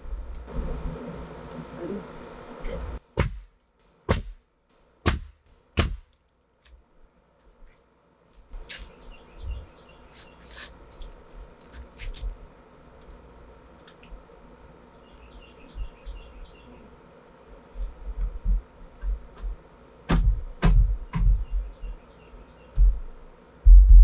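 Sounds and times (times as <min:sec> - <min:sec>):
sharp knocks: 0:03.2 - 0:04.4, 0:05.0 - 0:06.1, 0:19.0 - 0:21.7.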